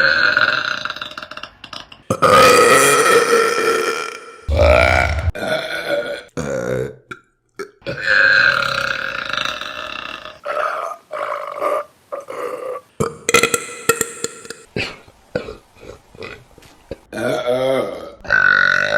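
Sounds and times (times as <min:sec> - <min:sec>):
woman burping loudly: 0:04.5 - 0:05.3.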